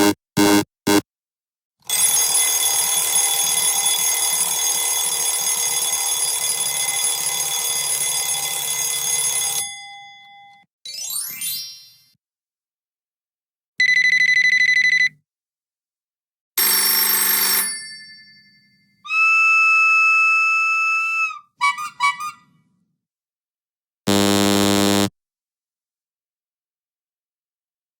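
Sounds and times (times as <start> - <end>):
short buzzing beep: 0.0 - 1.0, 24.1 - 25.1
steady electronic tone: 24.1 - 25.1.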